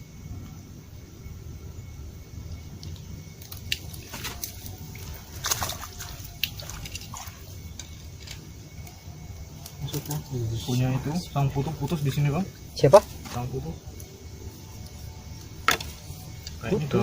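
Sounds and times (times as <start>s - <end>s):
steady low rumble: 0.0s - 17.0s
water splashes and drips: 2.8s - 9.0s.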